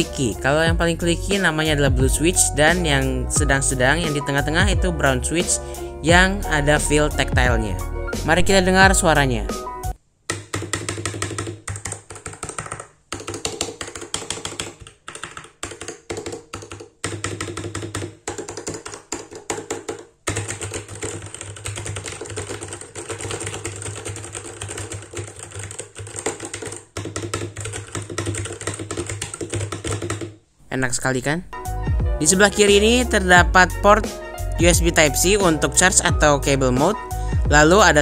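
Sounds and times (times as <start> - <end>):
background music: 0.0 - 10.0, 31.0 - 38.0
mechanical keyboard typing: 10.3 - 30.4.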